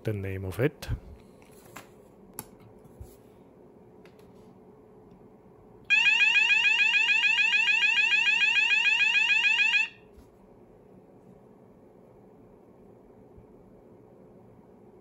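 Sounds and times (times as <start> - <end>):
fire alarm rising sweep: 5.9 - 10.0.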